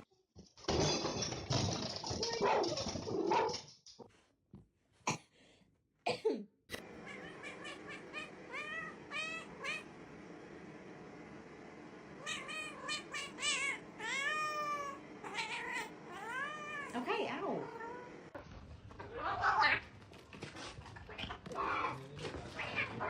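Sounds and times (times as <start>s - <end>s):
cat meowing: 7.0s - 9.9s, 12.2s - 18.1s
noisy scuffling: 18.3s - 23.0s.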